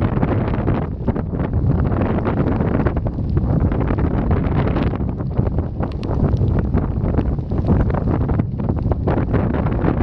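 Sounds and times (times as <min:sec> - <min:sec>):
strong wind buffeting microphone: 0:00.0 - 0:10.0.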